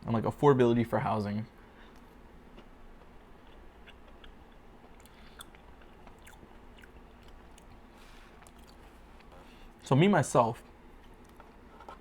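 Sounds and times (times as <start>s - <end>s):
person chewing cake: 1.8s - 9.8s, 11.0s - 12.0s.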